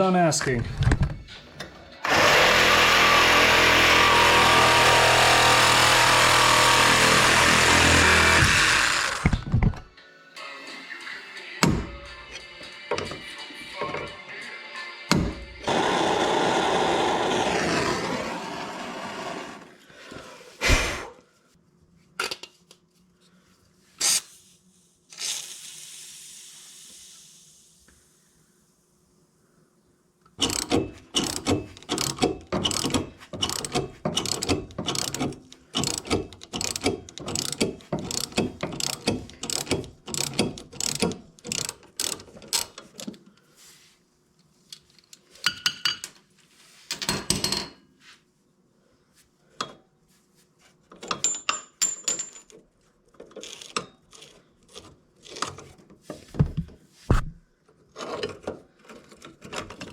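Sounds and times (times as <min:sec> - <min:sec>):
ratchet wrench clicking: 0:30.4 - 0:42.8.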